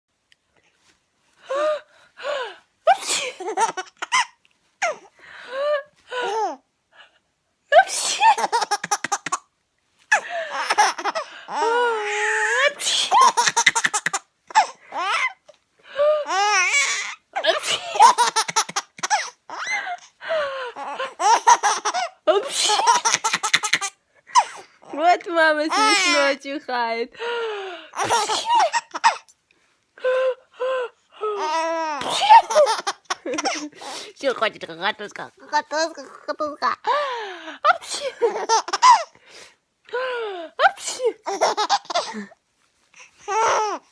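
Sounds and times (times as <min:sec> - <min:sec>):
woman sneezing: 0:02.9 - 0:03.4, 0:07.7 - 0:08.4, 0:12.6 - 0:13.2, 0:22.3 - 0:23.0, 0:32.0 - 0:32.5, 0:37.6 - 0:38.3, 0:40.6 - 0:41.3
baby laughing: 0:03.2 - 0:05.0, 0:08.1 - 0:09.5, 0:10.2 - 0:15.4, 0:16.3 - 0:20.1, 0:20.8 - 0:24.7, 0:25.7 - 0:26.2, 0:28.0 - 0:29.3, 0:31.4 - 0:33.8, 0:38.1 - 0:39.1, 0:41.2 - 0:42.2
baby squealing: 0:10.5 - 0:15.4, 0:16.2 - 0:19.9, 0:20.8 - 0:24.6, 0:25.7 - 0:26.3, 0:31.4 - 0:33.6, 0:43.3 - 0:43.9.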